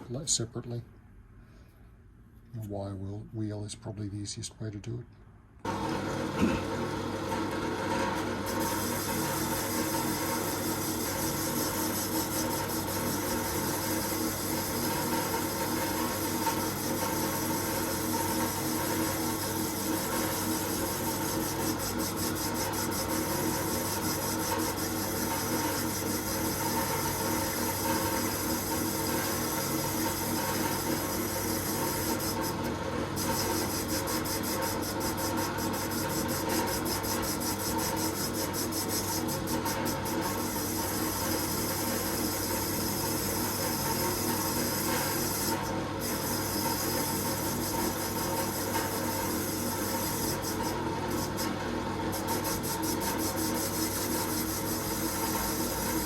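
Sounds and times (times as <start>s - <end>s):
wire wheel scrubbing rust: 8.6s - 32.6s, 33.2s - 42.2s.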